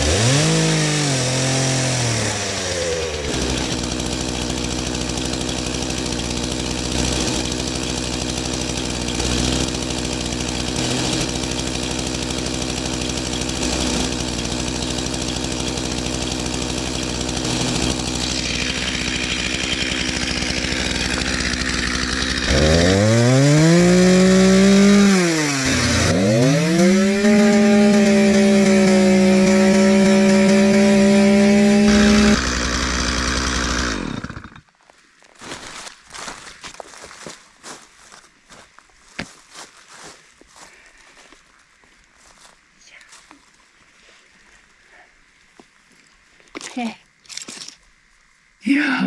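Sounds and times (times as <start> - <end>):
chainsaw idling and revving: 0.0 - 34.7, 46.4 - 47.8, 48.6 - 49.0.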